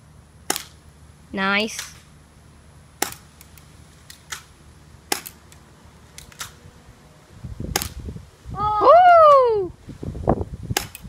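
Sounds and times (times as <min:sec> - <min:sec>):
airsoft pistol clicks and clacks: 0:03.0 - 0:04.5, 0:05.1 - 0:05.6, 0:06.2 - 0:06.6, 0:10.7 - 0:11.0.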